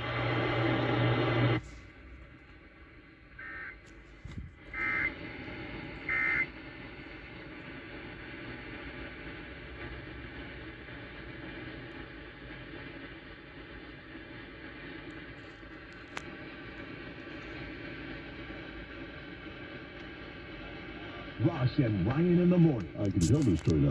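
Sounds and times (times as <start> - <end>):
radio hiss: 0.0 - 23.9
digital data tone bursts: 6.1 - 6.5.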